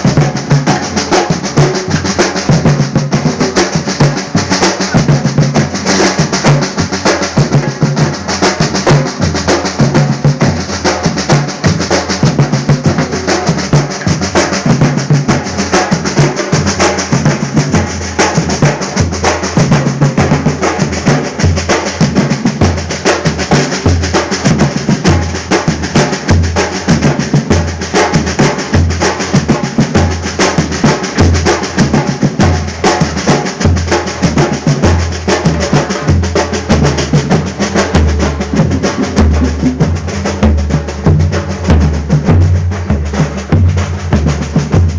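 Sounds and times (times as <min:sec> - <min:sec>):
fast drumming: 0:00.0 - 0:44.9
deep bass drum hits: 0:36.1 - 0:44.9.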